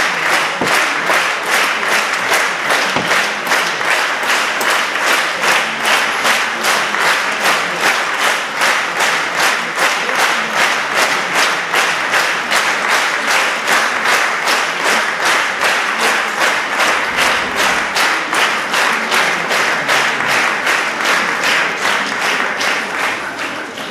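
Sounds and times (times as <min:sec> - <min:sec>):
audience clapping rhythmically: 0:00.0 - 0:23.9.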